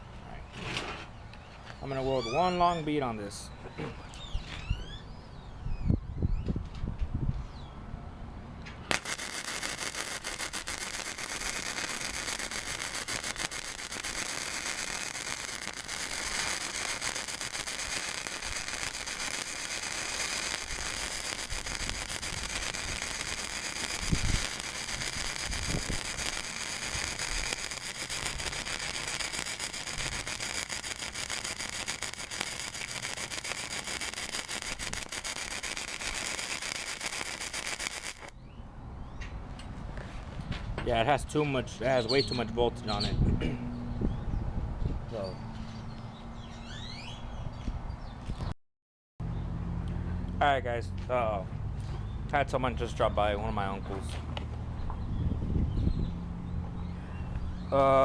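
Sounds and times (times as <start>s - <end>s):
crackling welding arc: 8.9s - 38.3s.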